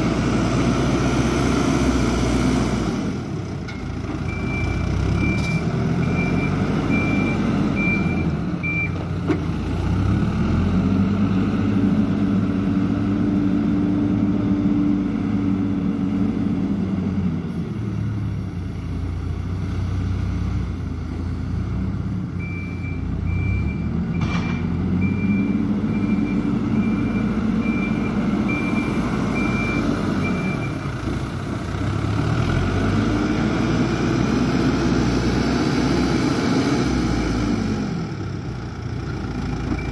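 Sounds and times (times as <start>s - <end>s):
heavy vehicle engine revving: 0.0s - 39.9s
reversing alarm beeping: 4.3s - 9.0s, 22.4s - 30.8s.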